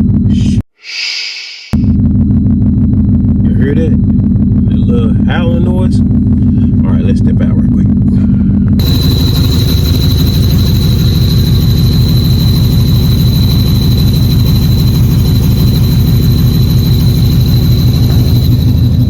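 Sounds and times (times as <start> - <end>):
high-pitched whine: 0.0 - 19.0
car engine idling: 8.1 - 19.0.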